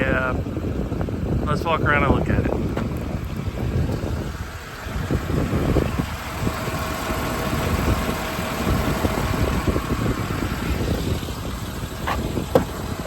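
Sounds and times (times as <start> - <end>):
diesel engine idling: 0.0 - 13.0
low thumps: 11.5 - 13.0.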